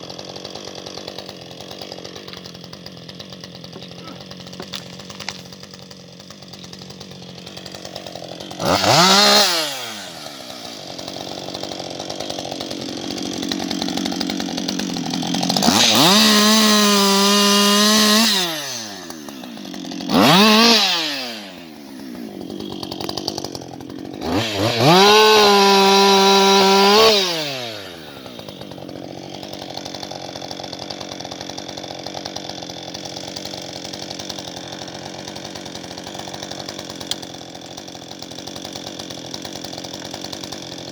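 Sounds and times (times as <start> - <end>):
chainsaw idling and revving: 0.0 - 40.9.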